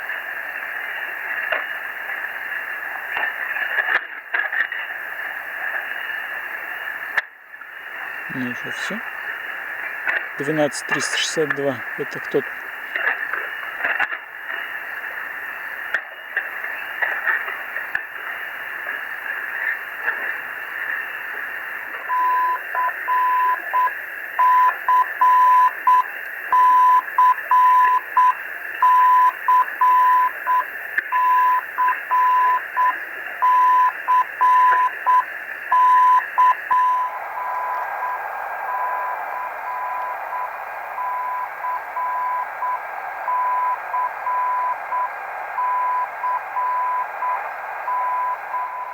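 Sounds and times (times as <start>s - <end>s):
radio static hiss: 0.0s - 42.2s
morse code tone: 10.4s - 12.4s.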